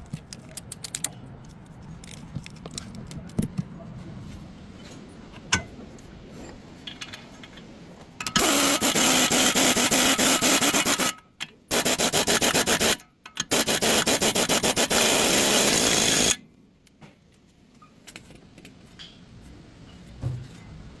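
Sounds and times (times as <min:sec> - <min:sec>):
faint tool handling clicks: 0:00.0 - 0:03.6
power tool rattling: 0:08.2 - 0:16.4.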